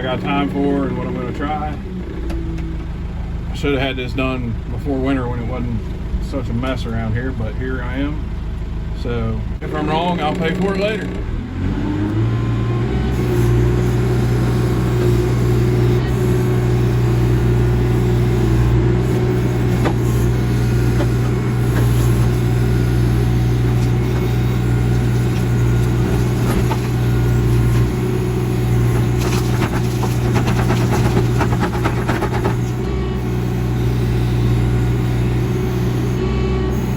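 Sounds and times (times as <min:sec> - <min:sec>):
backhoe engine running: 0:00.0 - 0:36.9
clatter and knocks: 0:28.9 - 0:32.8.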